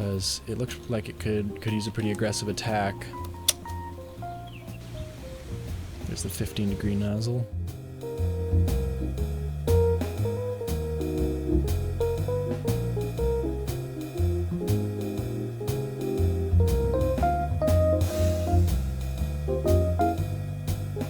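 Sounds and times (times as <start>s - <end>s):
guitar-led jazz blues instrumental: 7.4s - 18.7s, 19.5s - 20.3s.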